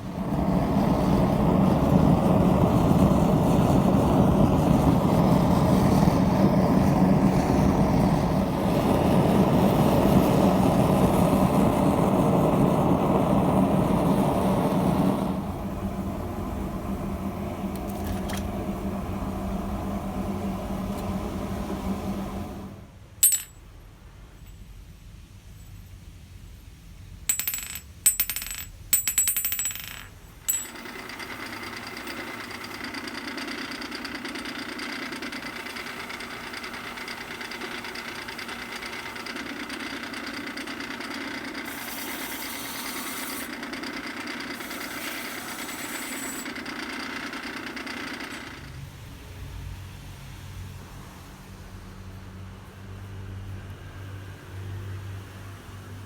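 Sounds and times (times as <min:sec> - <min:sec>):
belt sander grinding metal: 0:30.5 - 0:48.8.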